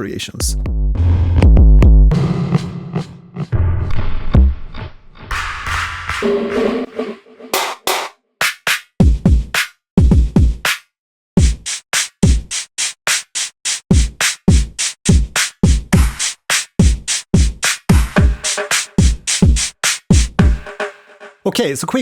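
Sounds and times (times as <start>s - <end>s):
electronic drum beat: 5.3s - 10.8s, 11.4s - 21.4s.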